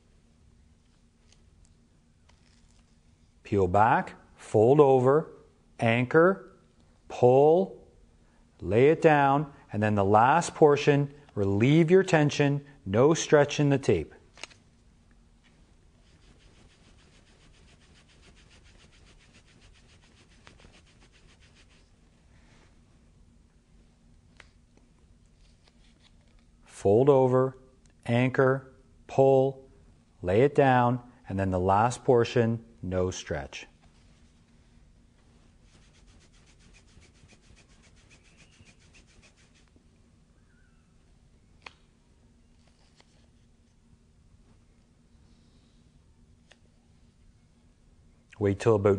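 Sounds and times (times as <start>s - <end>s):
soft brush: 15.6s - 23.0s, 33.8s - 39.9s
fingers rubbing tape on skin: 16.0s - 21.9s, 35.6s - 39.8s
fingers scratching over tape: 35.7s - 39.7s.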